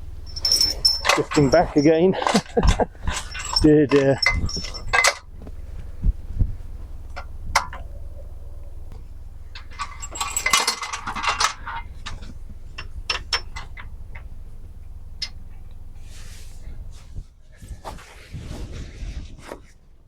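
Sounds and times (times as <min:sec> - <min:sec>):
metal gear clinking and rattling: 0:00.2 - 0:05.3, 0:09.5 - 0:14.3
wind rumble on microphone: 0:02.6 - 0:09.6, 0:16.5 - 0:19.8.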